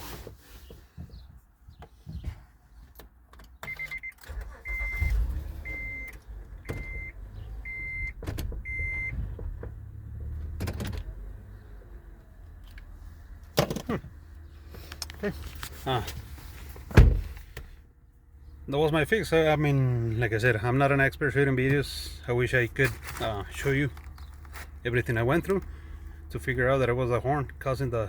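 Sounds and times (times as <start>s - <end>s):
car warning chime beeping: 3.7s - 9.2s.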